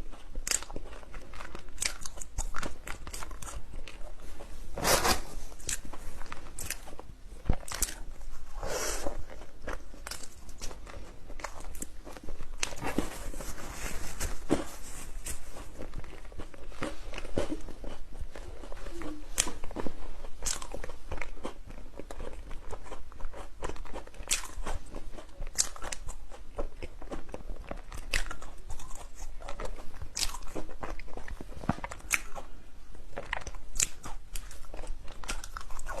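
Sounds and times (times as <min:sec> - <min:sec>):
crunchy food chewing: 0:00.0 - 0:36.0.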